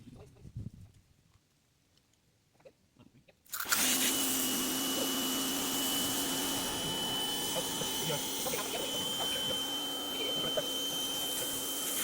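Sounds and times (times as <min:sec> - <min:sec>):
pressure washer running: 0:03.5 - 0:12.0.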